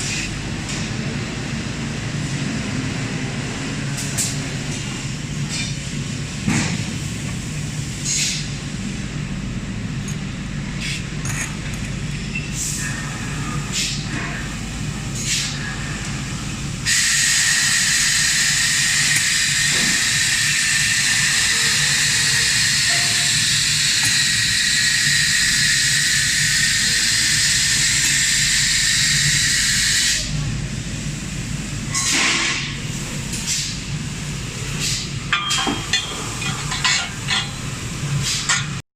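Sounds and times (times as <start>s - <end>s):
loud even welding hiss: 16.8s - 30.3s.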